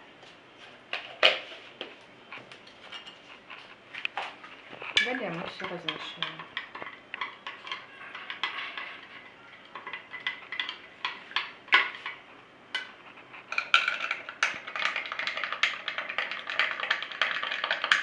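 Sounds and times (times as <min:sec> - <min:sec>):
stirrer clinking against glass: 0:05.0 - 0:11.5, 0:13.5 - 0:18.0.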